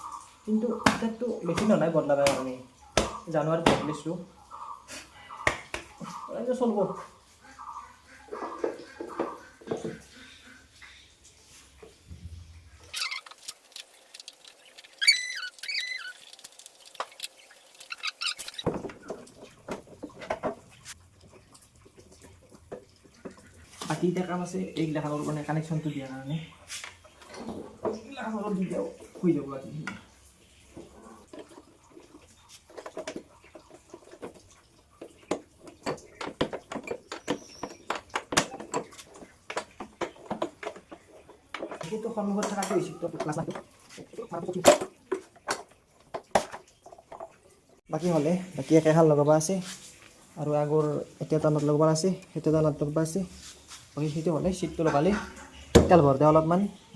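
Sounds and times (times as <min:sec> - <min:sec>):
short high squeaks: 0:12.8 - 0:13.6, 0:14.8 - 0:16.4, 0:17.1 - 0:18.7
taps clicks and rustling: 0:31.3 - 0:47.4.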